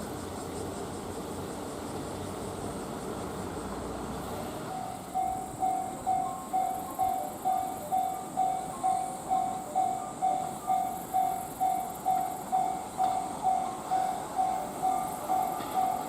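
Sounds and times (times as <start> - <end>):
train rumble: 0.0 - 16.0
level crossing bell dinging: 4.8 - 16.0.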